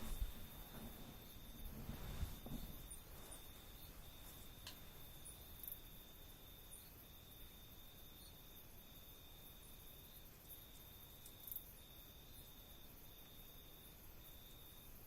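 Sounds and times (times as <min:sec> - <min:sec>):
faint high insect ticks: 0:00.0 - 0:15.0
low background hiss: 0:00.0 - 0:15.0.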